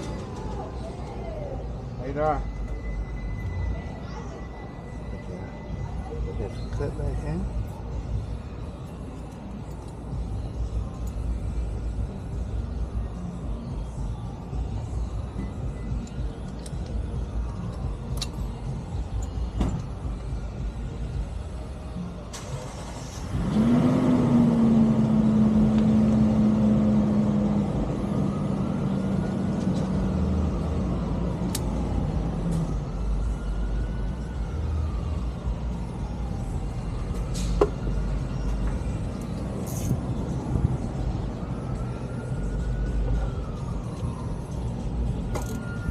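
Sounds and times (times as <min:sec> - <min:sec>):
road traffic rumble: 0:00.0 - 0:45.9
passing vehicle engine: 0:22.3 - 0:33.0.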